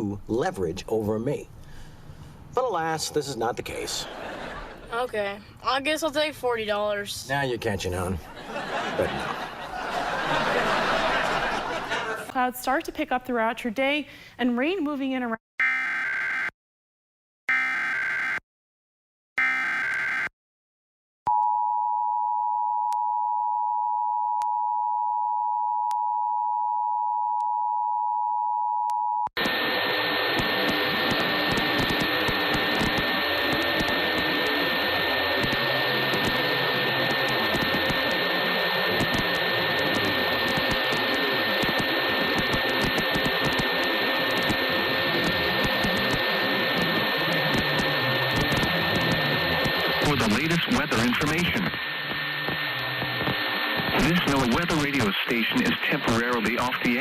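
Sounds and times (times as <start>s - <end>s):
loud static hiss: 1.5s - 12.5s, 29.4s - 57.0s.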